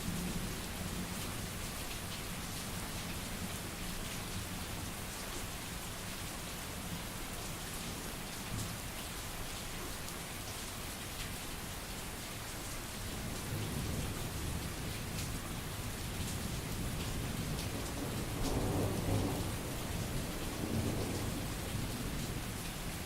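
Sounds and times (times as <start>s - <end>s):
steady rain: 0.0s - 23.0s
rolling thunder: 17.3s - 21.8s.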